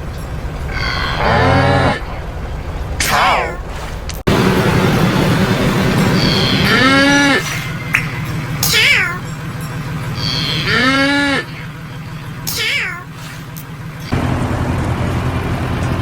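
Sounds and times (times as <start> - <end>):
low steady hum: 0.0 - 16.0
cat meowing: 8.6 - 9.2, 12.5 - 13.1.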